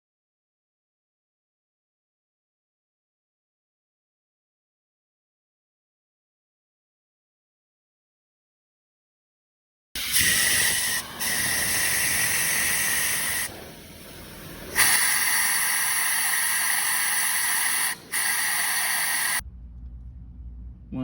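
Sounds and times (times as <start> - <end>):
pressurized spray hissing: 10.0 - 19.4.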